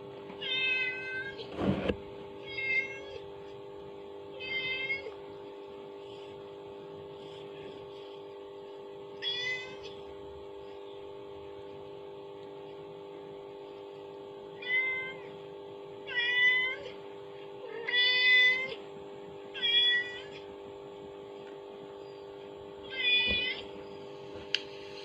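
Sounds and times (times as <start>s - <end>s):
steady low hum: 0.0s - 25.0s
cat meowing: 19.6s - 20.4s, 22.9s - 23.7s.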